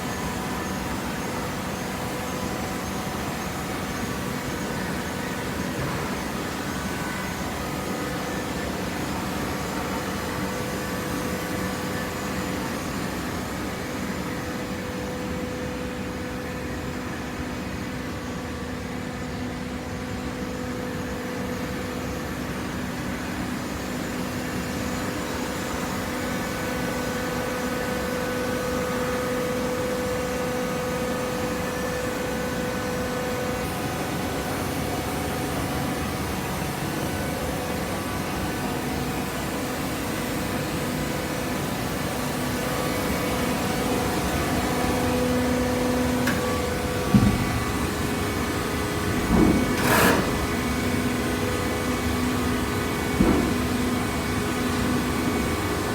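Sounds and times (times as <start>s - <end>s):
baling machine hum: 25.6s - 55.9s.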